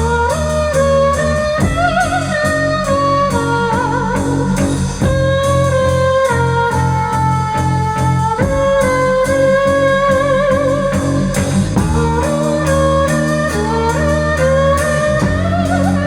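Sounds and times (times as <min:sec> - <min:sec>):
bass line: 0:00.0 - 0:16.0
drumbeat: 0:00.0 - 0:16.0
wavering melody line: 0:09.3 - 0:16.0.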